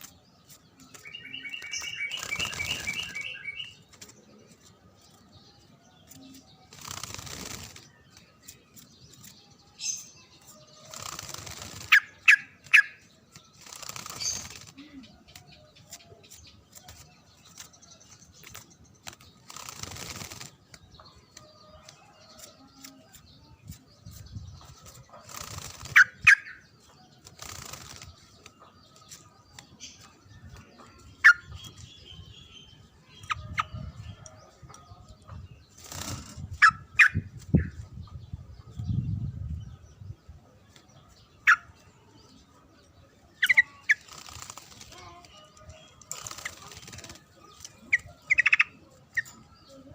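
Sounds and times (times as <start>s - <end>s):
rustling or fluttering: 0.0s - 5.5s, 6.1s - 9.5s, 10.4s - 26.3s, 27.0s - 31.0s, 35.7s - 38.0s, 43.6s - 48.0s
bird chirping: 0.0s - 49.9s.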